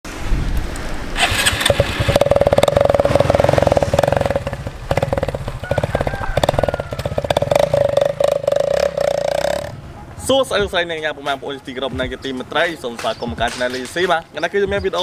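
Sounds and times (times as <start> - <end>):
motorcycle engine running: 1.2 - 10.0.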